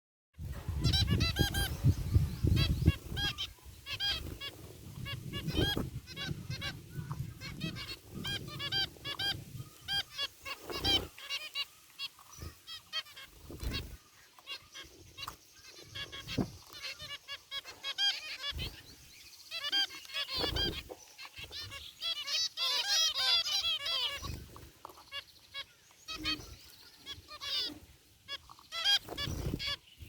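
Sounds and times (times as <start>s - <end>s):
finches honking beeps: 19.5s - 20.8s.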